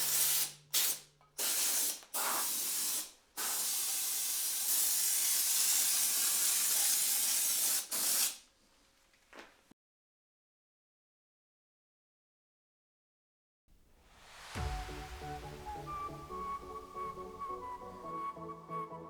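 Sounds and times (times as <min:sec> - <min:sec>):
spray paint hissing: 0:00.0 - 0:08.4.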